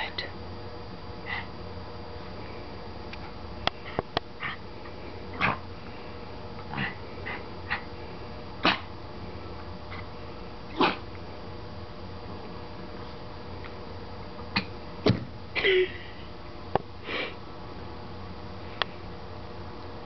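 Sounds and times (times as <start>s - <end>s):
dog sneezing: 8.6s - 8.9s, 10.7s - 11.0s.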